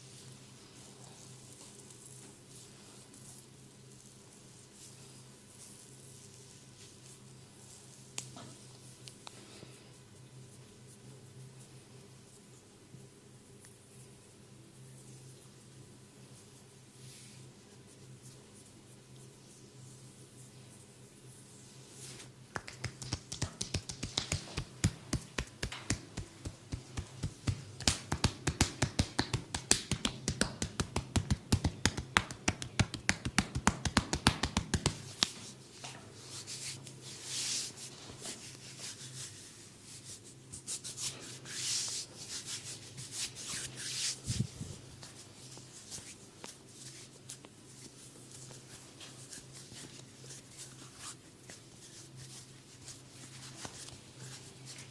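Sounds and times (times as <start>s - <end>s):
palms rubbing over skin: 0.2s - 8.8s, 16.3s - 54.9s
massage chops and slaps: 22.5s - 35.6s.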